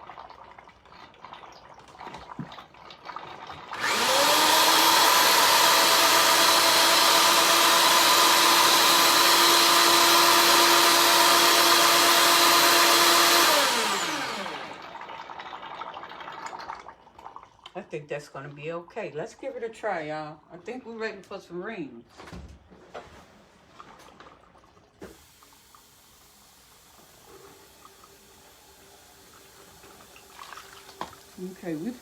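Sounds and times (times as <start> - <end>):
motor whining: 3.8 - 14.9.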